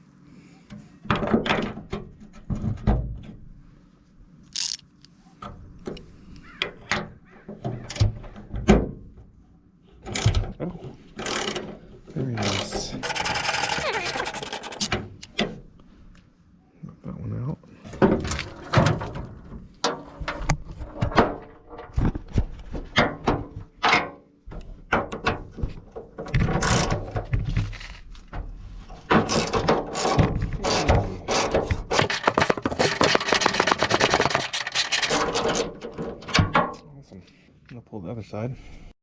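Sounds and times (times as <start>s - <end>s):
fast clicking: 13.0s - 14.9s, 32.0s - 35.2s.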